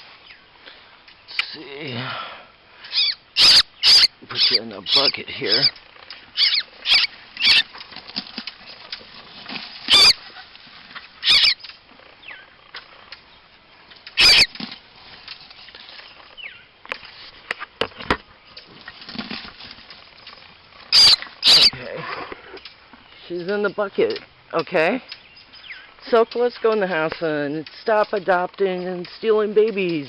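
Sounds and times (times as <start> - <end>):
bird giving harsh squawks: 2.8 - 7.7, 9.9 - 10.2, 11.2 - 11.6, 14.2 - 14.5, 20.9 - 21.8.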